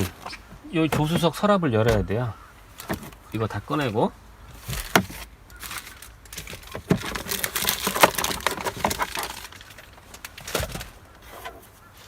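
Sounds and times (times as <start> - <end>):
small objects clattering: 4.6 - 11.8.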